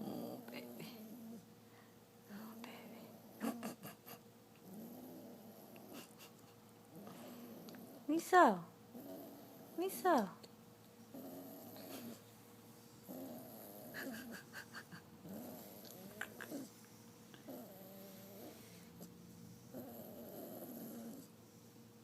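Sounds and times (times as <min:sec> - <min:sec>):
puppy snoring: 0:00.0 - 0:01.5, 0:02.4 - 0:06.2, 0:06.9 - 0:08.1, 0:08.9 - 0:09.8, 0:11.0 - 0:21.4.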